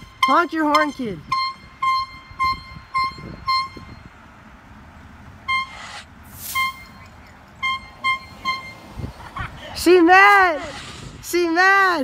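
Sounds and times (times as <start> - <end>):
horn short toots: 5.5 - 8.8.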